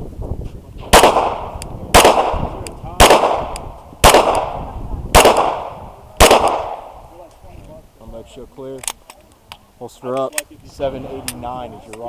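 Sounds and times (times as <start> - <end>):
pistol shots echoing: 0.8 - 7.0.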